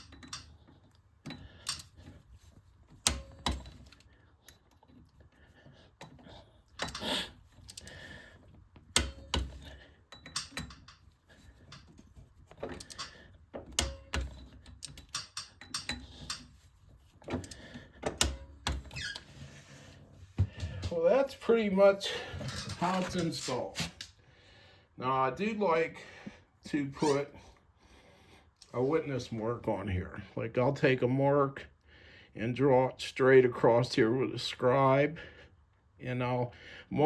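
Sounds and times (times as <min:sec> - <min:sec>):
metal tool clicks and clanks: 0:00.0 - 0:02.2, 0:03.0 - 0:04.7, 0:06.0 - 0:08.0, 0:08.9 - 0:16.6, 0:17.2 - 0:19.2.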